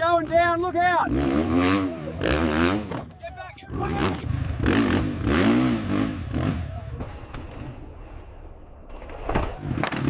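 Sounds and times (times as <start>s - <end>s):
dirt bike engine revving: 0.2s - 7.1s.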